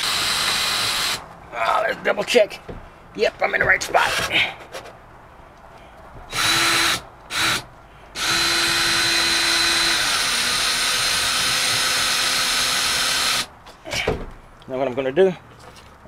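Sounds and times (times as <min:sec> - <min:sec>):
power drill driving screw: 0:00.0 - 0:01.2, 0:06.3 - 0:07.6, 0:08.2 - 0:13.5.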